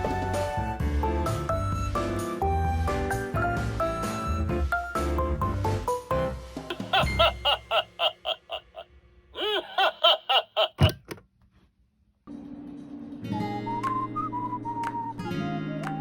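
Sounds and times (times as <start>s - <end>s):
background music: 0.0s - 8.8s, 12.8s - 16.0s
high-pitched laugh: 6.7s - 8.8s, 9.4s - 11.0s.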